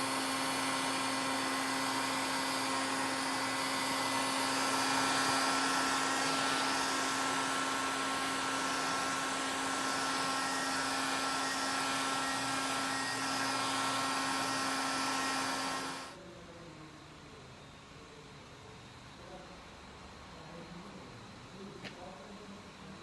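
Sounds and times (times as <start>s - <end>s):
heat gun blowing hot air: 0.0s - 16.2s.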